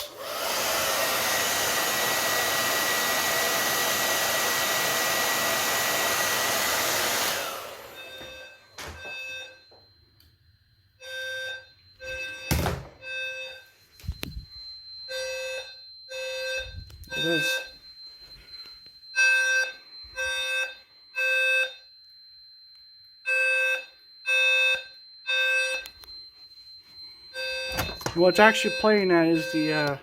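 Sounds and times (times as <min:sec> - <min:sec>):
hair dryer blowing: 0:00.0 - 0:08.4
fire alarm buzzy pulses: 0:00.0 - 0:30.0.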